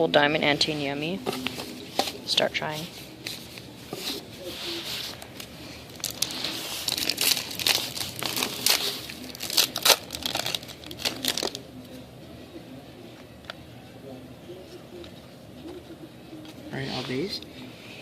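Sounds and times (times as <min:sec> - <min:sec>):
wrapper tearing and crinkling: 0:05.1 - 0:11.6.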